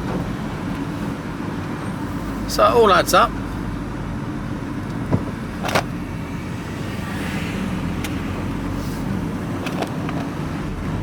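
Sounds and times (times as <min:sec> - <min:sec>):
road noise: 0:00.0 - 0:11.0
van engine rumble: 0:00.0 - 0:11.0.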